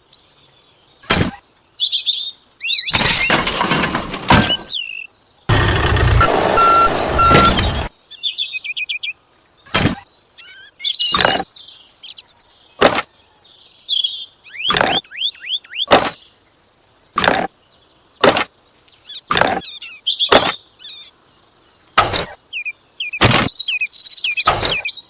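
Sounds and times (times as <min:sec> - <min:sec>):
small birds chirping: 0:00.0 - 0:25.0
sharp knocks: 0:03.0 - 0:04.7, 0:09.7 - 0:10.0, 0:15.9 - 0:16.2, 0:19.3 - 0:19.6, 0:20.3 - 0:20.6, 0:23.2 - 0:23.5
loud rushing noise: 0:05.5 - 0:07.9.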